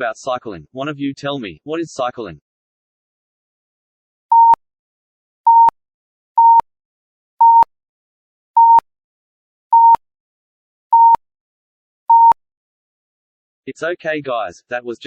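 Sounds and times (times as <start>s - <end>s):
fire alarm beeps: 5.5s - 5.7s, 12.1s - 12.4s.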